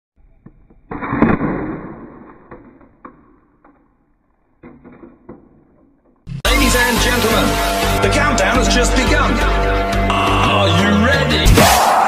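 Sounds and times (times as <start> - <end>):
sharp cracks and pops: 0.2 - 6.3.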